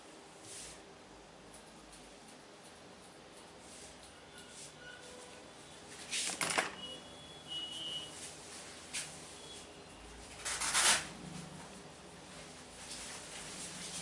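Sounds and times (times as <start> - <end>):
high-pitched squeak: 4.2 - 5.4
rubbing or brushing: 12.3 - 14.0.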